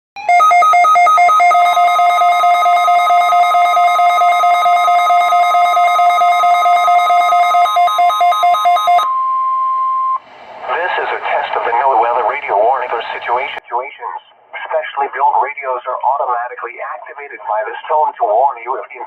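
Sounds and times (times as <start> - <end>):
buzzing two-pitch alarm: 0.2 - 13.2
steady alarm tone: 0.2 - 13.6.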